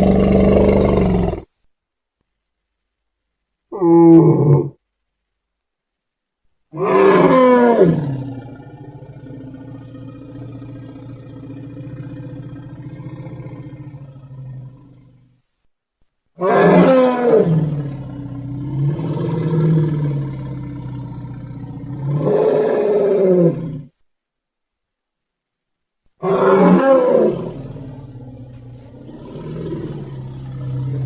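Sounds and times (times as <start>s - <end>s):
low steady animal call: 0.0s - 1.5s, 3.7s - 4.8s, 6.7s - 15.4s, 16.4s - 24.0s, 26.2s - 31.0s.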